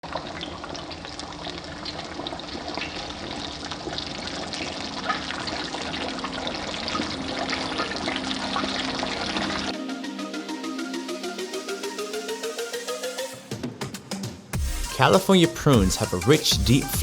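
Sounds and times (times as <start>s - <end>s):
hot oil sizzling and crackling: 0.0s - 9.5s.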